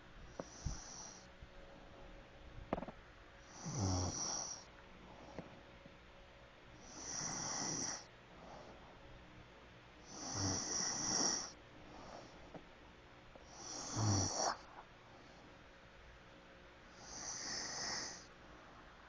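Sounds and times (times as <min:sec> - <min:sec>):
quiet breathing: 0:00.0 - 0:02.2, 0:03.4 - 0:05.7, 0:06.7 - 0:09.4, 0:10.0 - 0:15.8, 0:16.8 - 0:19.0
person snoring: 0:00.4 - 0:01.2, 0:03.5 - 0:04.7, 0:06.8 - 0:08.1, 0:10.1 - 0:11.6, 0:13.5 - 0:14.6, 0:17.0 - 0:18.3.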